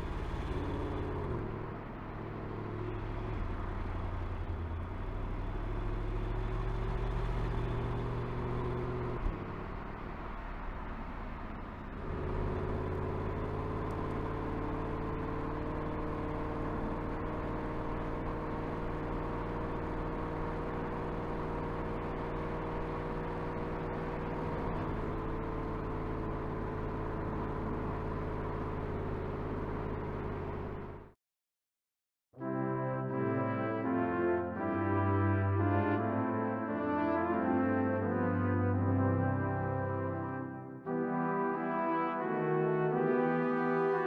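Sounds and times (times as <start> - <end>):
car engine running steadily: 0.0 - 31.2.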